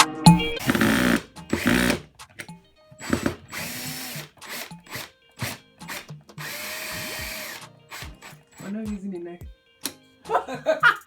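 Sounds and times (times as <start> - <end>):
power drill spinning: 0.4 - 8.8.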